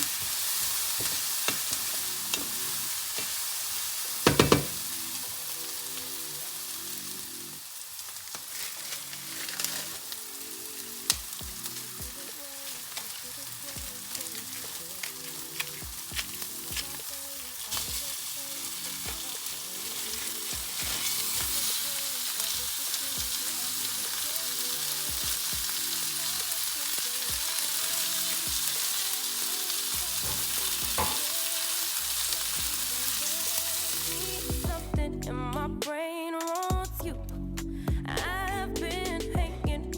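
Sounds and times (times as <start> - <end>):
food sizzling in a pan: 0.0 - 34.8
utensil tapping against pan: 4.3 - 4.8.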